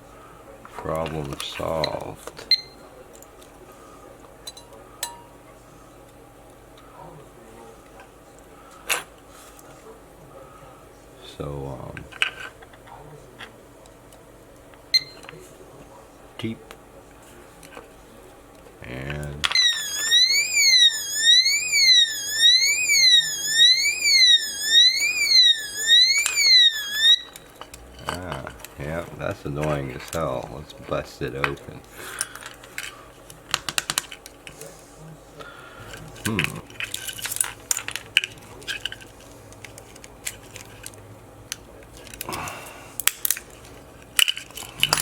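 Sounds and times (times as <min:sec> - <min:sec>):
electronic alarm siren sweeping: 0:19.5 - 0:27.5.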